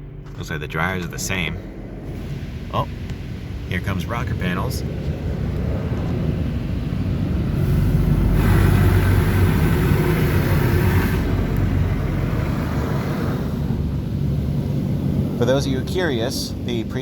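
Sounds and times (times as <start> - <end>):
steady low rumble: 0.0 - 17.0
high-pressure water spray: 6.5 - 15.4.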